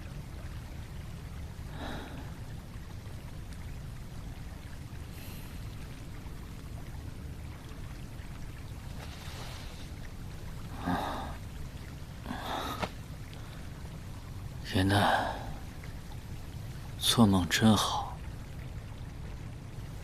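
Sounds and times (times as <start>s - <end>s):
low steady hum: 0.0s - 20.0s
person exhaling breathily: 10.7s - 11.4s.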